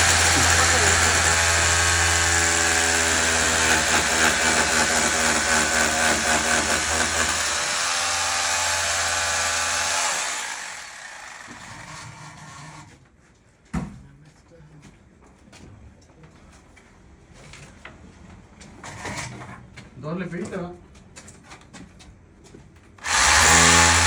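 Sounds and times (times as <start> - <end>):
electric drill running: 0.0 - 12.0, 23.0 - 24.0.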